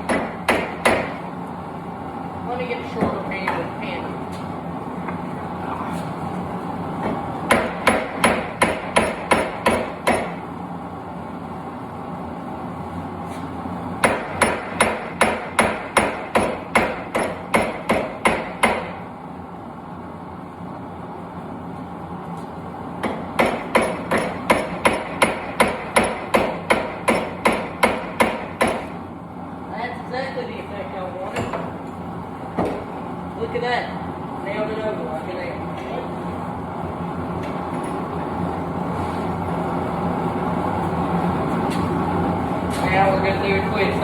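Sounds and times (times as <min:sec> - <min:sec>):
hammer striking steel on anvil: 0:07.5 - 0:10.4, 0:23.0 - 0:28.9.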